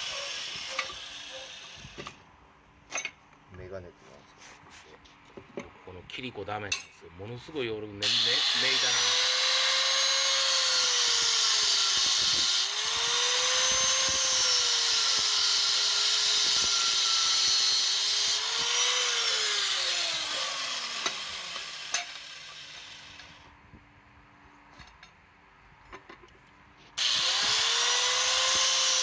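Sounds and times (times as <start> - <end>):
electric power tool whining: 0.0 - 2.1, 8.0 - 23.4, 27.0 - 29.0.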